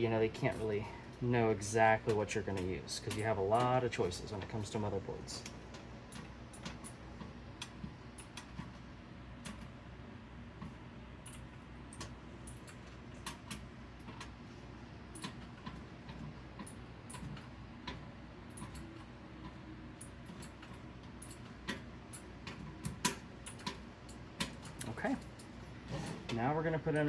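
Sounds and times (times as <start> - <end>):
faint steady hum: 0.0 - 27.0
small parts and tools clicking: 2.1 - 4.4, 15.1 - 25.6.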